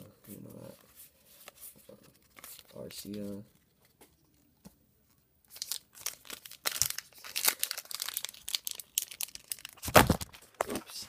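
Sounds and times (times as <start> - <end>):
wrapper crinkling and rustling: 5.5 - 10.8.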